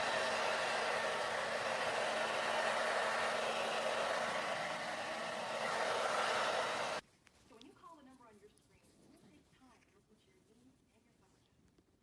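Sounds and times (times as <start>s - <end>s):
electric blower motor rushing: 0.0s - 7.0s.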